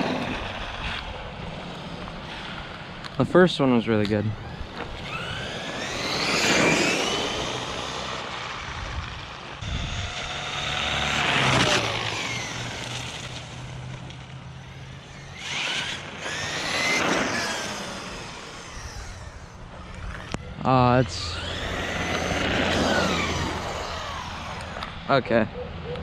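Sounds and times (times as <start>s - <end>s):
electric toy truck motor whine: 4.3s - 25.1s.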